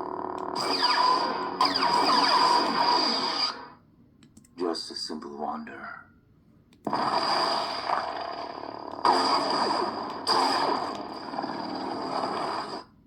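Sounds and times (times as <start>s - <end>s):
lightsaber humming: 0.0s - 3.8s, 6.9s - 12.9s
lightsaber igniting: 0.1s - 3.8s, 6.9s - 13.0s.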